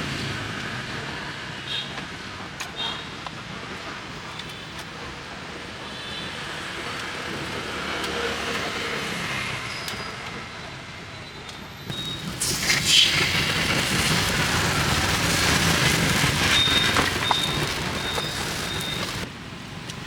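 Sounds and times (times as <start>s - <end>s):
street traffic: 0.0s - 20.0s
vehicle passing: 11.9s - 19.3s.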